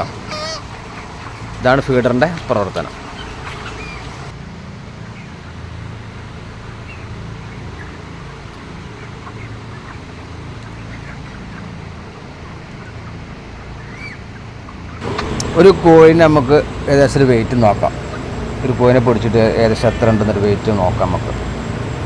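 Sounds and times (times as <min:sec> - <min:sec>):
chickens peeping and clucking: 0:00.0 - 0:04.4, 0:06.2 - 0:22.0
low machinery hum: 0:00.0 - 0:22.0
high hiss: 0:15.0 - 0:22.0.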